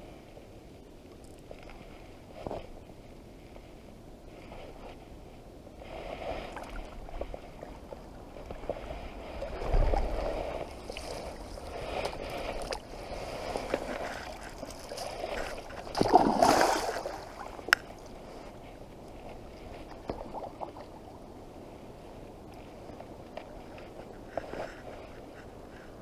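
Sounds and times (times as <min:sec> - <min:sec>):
water splashing and sloshing: 0:05.8 - 0:25.0.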